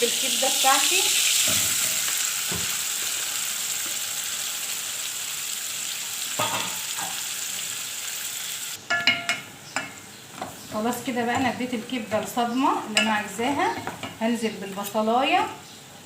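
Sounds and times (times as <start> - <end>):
liver sizzling in a pan: 0.0 - 8.8.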